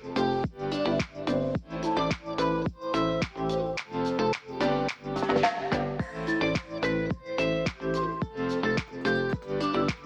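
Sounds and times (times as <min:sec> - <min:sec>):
electronic dance music: 0:04.3 - 0:06.8.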